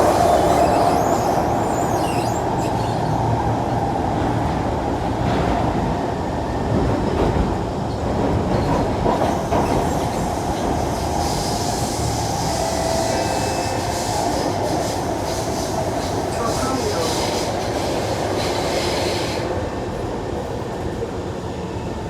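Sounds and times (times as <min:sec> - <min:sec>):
train wheels rumbling on rails: 0:00.0 - 0:22.0.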